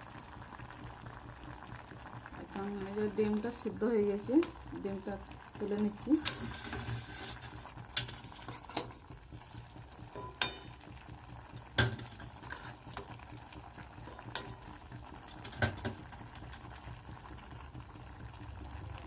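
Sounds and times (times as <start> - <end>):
water bubbling in pot: 0.0 - 19.0
metal spoon clinking on pot: 10.1 - 10.8.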